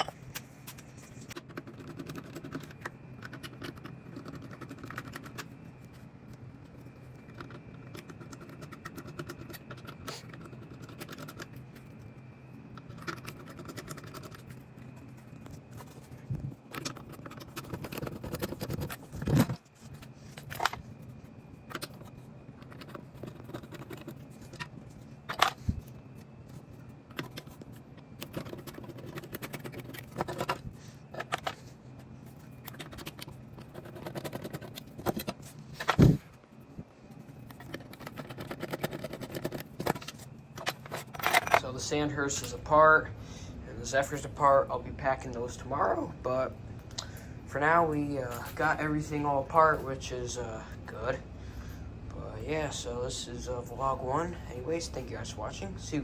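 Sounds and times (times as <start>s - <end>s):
metal parts and screws clinking: 37.5s - 41.7s.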